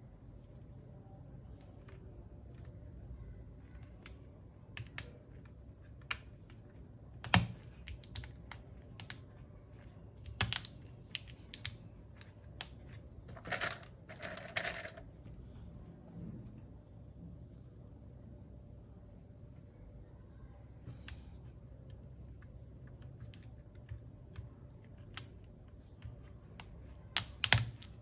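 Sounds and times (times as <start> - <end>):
mechanical keyboard clicks: 26.6 - 28.0.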